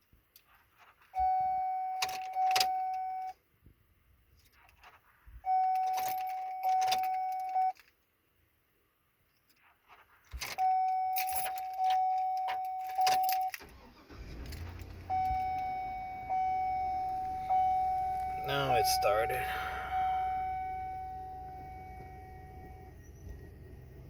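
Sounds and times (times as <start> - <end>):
electronic warning chime: 15.1 - 23.0.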